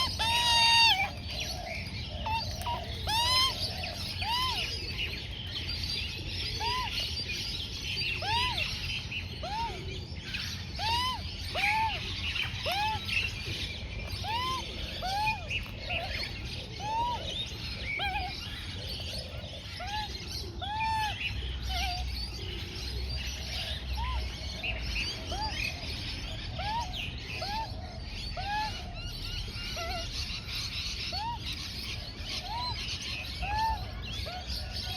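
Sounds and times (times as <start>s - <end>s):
young magpie begging calls: 0.0s - 1.2s.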